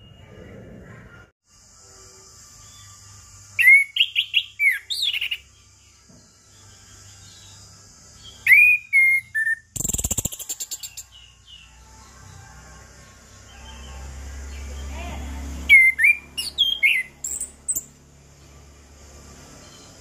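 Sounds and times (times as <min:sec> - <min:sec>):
harsh rattling bird call: 0:02.4 - 0:05.9, 0:06.5 - 0:18.0
thrush whistled song: 0:03.5 - 0:05.5, 0:08.3 - 0:11.1, 0:15.7 - 0:18.0.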